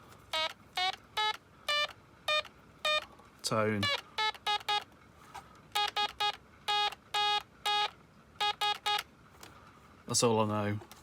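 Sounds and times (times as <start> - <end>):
buzzy morse code beeps: 0.3 - 3.1, 3.8 - 4.9, 5.7 - 9.1.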